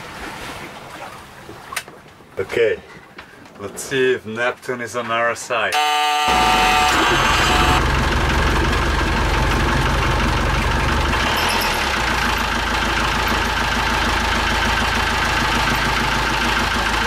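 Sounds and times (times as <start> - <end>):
high-pitched belt squeal: 5.8 - 7.8
diesel engine running: 5.8 - 17.0.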